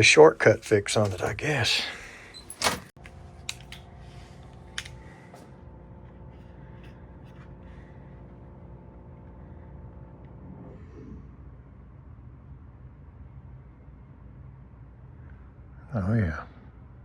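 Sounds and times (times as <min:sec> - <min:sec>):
heat pump humming: 0:00.0 - 0:10.9.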